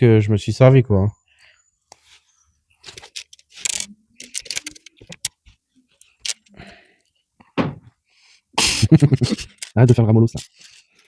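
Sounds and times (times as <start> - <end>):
plastic bricks clicking: 2.8 - 5.4.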